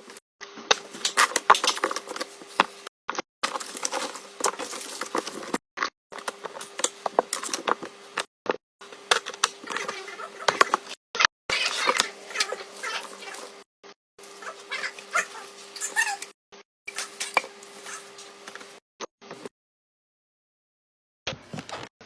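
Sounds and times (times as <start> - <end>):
objects being handled: 0.0 - 5.6, 6.2 - 8.2, 8.8 - 13.6, 14.2 - 16.3, 16.9 - 18.8.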